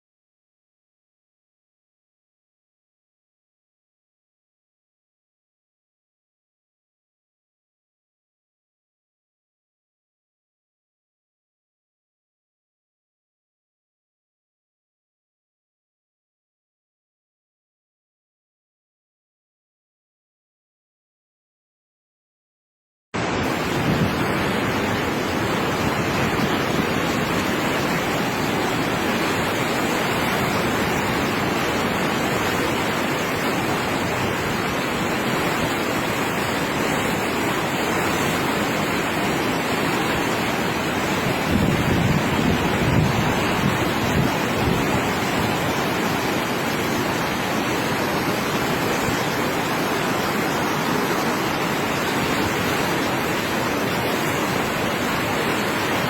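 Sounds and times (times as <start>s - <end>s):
roar of rushing floodwater: 23.2s - 56.0s
wind gusts on microphone: 23.2s - 56.0s.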